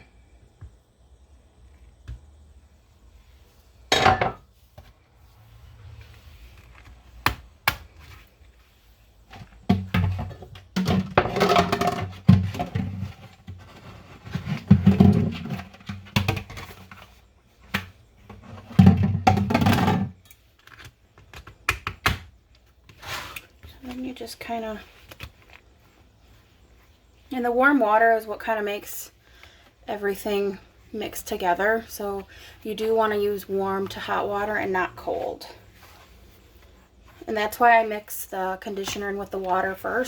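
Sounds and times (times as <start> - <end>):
liquid sloshing in shaken jugs: 8.2 - 20.2
plastic jugs knocking: 9.3 - 20.2.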